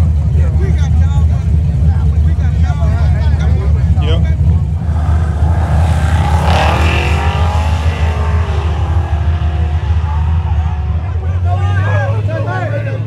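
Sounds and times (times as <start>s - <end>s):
vehicle engine: 0.0s - 13.0s
heavy low rumble: 3.2s - 12.2s.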